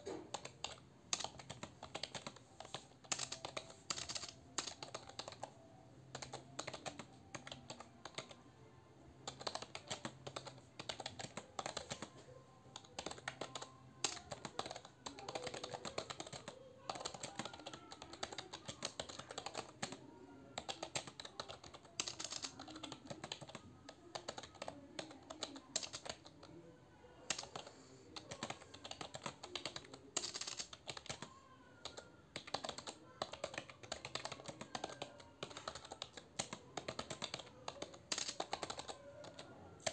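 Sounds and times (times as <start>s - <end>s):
fast typing on keyboard: 0.0s - 8.4s, 9.2s - 26.6s, 27.3s - 39.9s.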